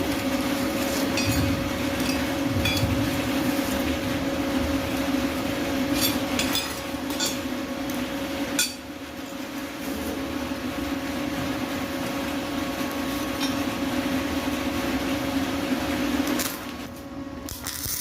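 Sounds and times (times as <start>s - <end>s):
welding arc hissing and crackling: 0.0s - 8.7s, 16.2s - 18.0s
electrical hum: 0.0s - 18.0s.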